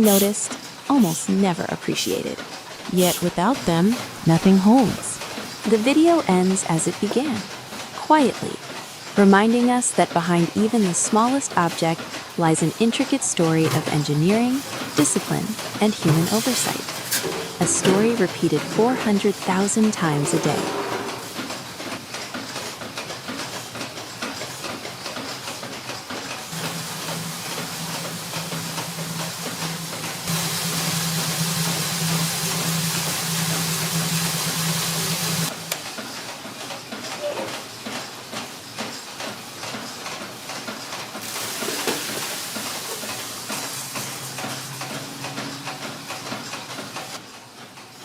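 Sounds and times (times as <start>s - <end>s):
machinery clattering: 0.0s - 48.0s
steady hiss: 26.5s - 35.5s.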